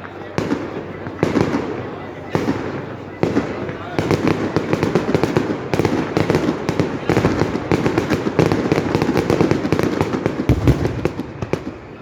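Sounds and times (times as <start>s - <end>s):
fireworks bangs and crackles: 0.0s - 12.0s
heavy firework boom: 10.4s - 12.0s.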